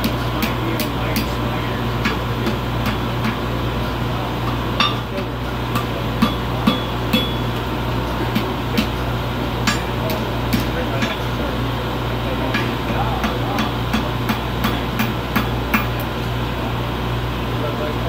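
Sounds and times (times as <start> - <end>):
hammer striking steel on anvil: 0.0 - 3.5, 4.4 - 11.5, 12.4 - 16.1
steady low hum: 0.0 - 18.0.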